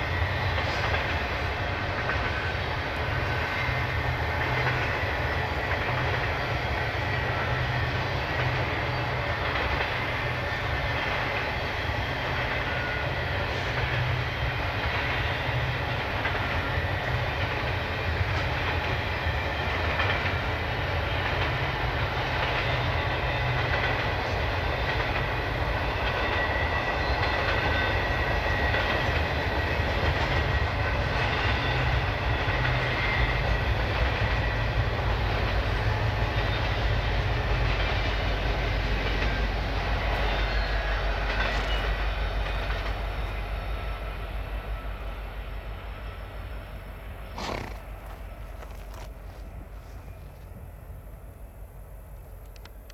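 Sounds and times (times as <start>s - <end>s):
freight train wheels rumbling: 0.0s - 52.9s.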